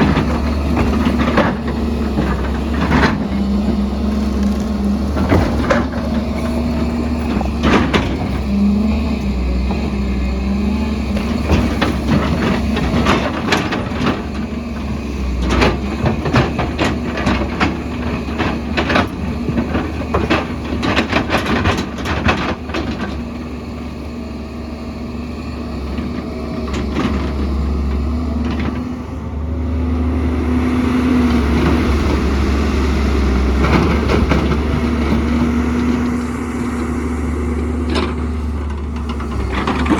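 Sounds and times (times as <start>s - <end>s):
bucket clanking and scraping rock: 0.0s - 23.2s
diesel engine running: 0.0s - 39.9s.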